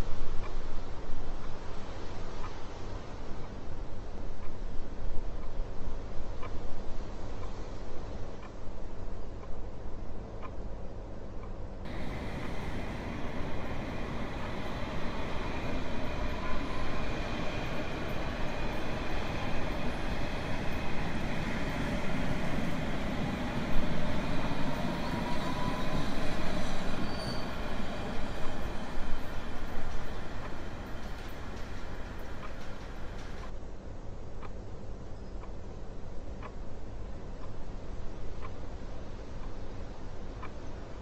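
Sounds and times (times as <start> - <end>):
train rumbling on rails: 0.0 - 35.0
faint wheel squeals: 25.0 - 28.8.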